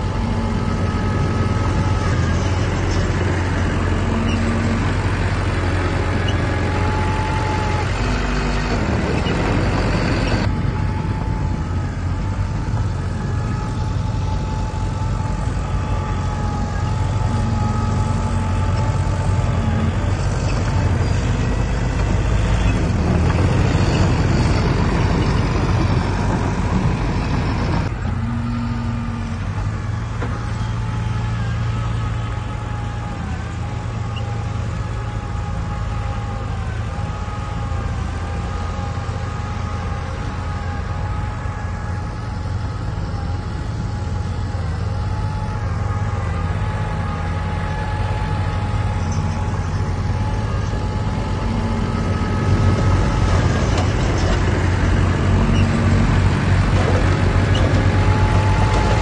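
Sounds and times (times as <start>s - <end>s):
deep diesel engine rumble: 0.0s - 59.0s
thin wavering whine: 0.0s - 59.0s.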